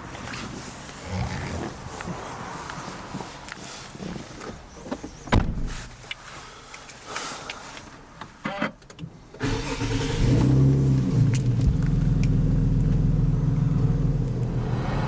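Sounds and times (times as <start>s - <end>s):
car engine starting and idling: 9.0s - 15.0s.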